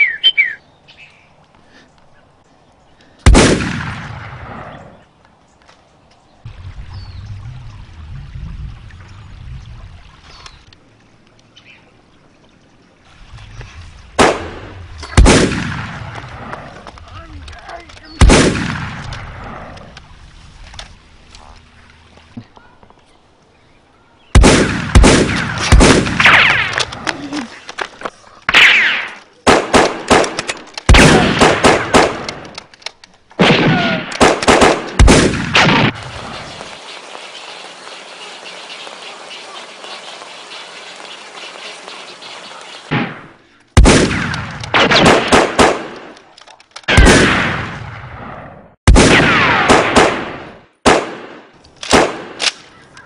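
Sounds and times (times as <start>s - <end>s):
low outdoor rumble: 1.4s - 28.6s
gunfire sound effects: 3.3s - 4.8s, 14.2s - 16.2s, 18.2s - 19.1s, 24.4s - 26.8s, 28.5s - 32.4s, 33.4s - 36.8s, 42.8s - 46.2s, 46.9s - 52.5s
gunshots with echo: 33.4s - 36.0s.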